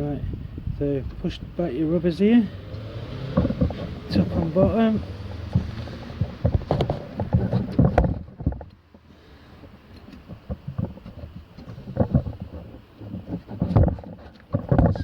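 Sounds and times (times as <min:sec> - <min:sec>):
brake parts clinking and knocking: 0:01.0 - 0:09.0.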